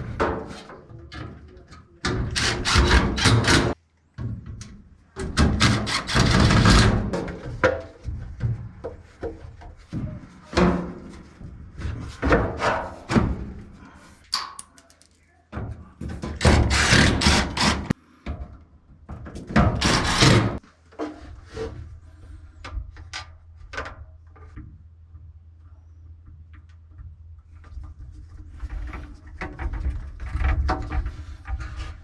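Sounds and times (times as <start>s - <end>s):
rustling and scraping: 5.6s - 15.2s, 27.4s - 32.0s.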